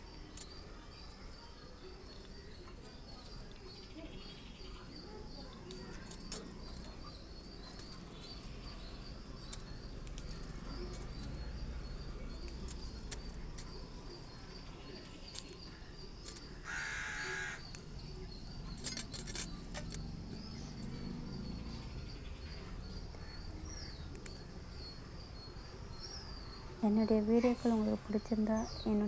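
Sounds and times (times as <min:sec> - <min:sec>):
outdoor background noise: 0:00.0 - 0:29.0
crow cawing: 0:16.6 - 0:17.7.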